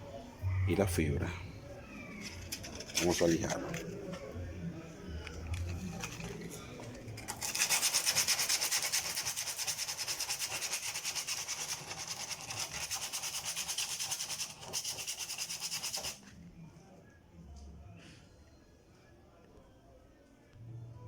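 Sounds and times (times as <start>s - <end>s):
sandpaper rasping on metal: 7.3s - 16.2s.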